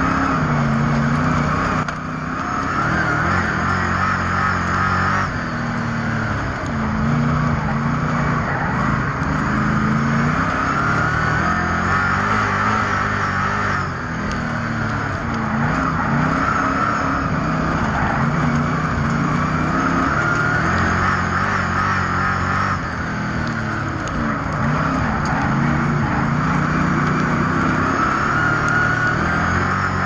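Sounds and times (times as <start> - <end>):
race car engines accelerating: 0.0 - 30.0
rush of track noise: 0.0 - 30.0.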